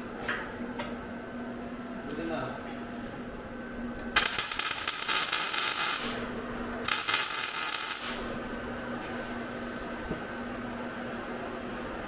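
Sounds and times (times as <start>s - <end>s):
shop tool crackling hiss: 4.2s - 6.3s, 6.9s - 8.3s.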